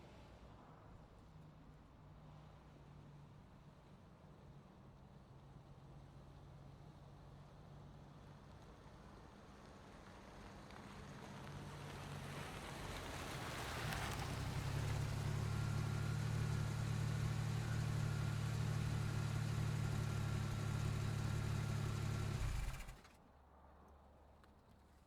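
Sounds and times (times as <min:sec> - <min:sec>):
car engine idling: 0:14.6 - 0:23.1.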